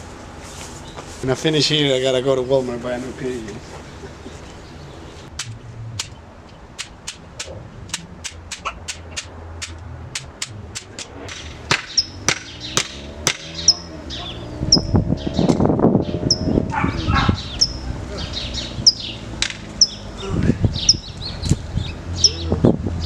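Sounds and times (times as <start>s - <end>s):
sharp clicks and taps: 5.3s - 13.8s.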